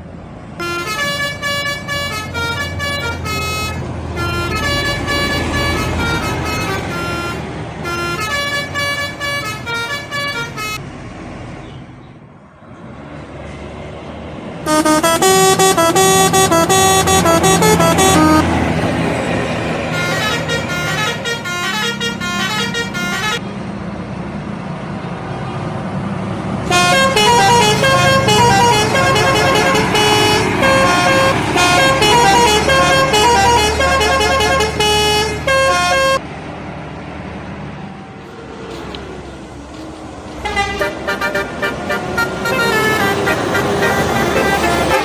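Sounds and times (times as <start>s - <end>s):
engine running: 0.6s - 10.8s, 14.6s - 23.4s, 25.8s - 45.0s
multi-tone bus air horns: 0.6s - 10.8s, 14.6s - 18.7s, 19.5s - 23.5s, 26.7s - 36.2s, 40.4s - 45.0s.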